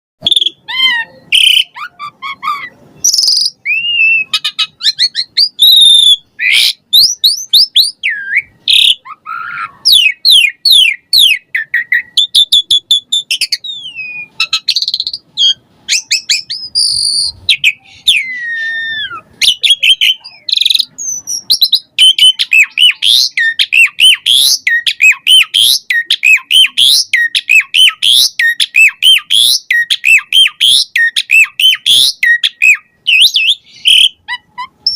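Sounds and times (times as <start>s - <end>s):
starling singing: 0.2s - 34.9s.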